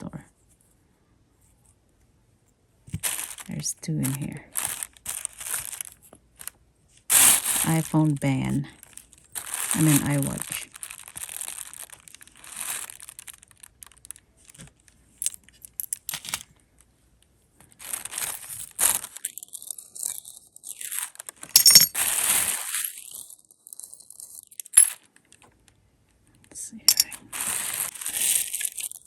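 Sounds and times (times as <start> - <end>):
plastic packaging crinkling: 3.0 - 6.5, 7.1 - 16.5, 17.7 - 25.1, 27.0 - 29.0
metal jewelry clinking: 21.6 - 22.0, 23.7 - 25.0, 26.9 - 27.6.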